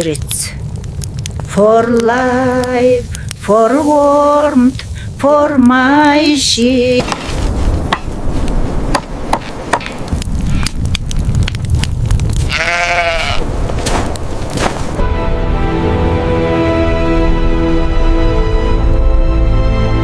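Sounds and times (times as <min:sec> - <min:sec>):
sharp crackling clicks: 0:00.0 - 0:12.5
steady low rumble: 0:00.0 - 0:16.4
sheep bleating: 0:12.5 - 0:13.4.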